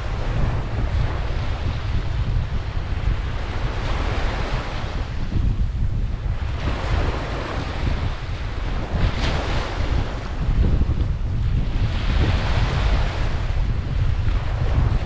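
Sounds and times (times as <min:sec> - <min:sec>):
surf washing onto beach: 0:00.0 - 0:15.0
wind buffeting microphone: 0:00.0 - 0:15.0.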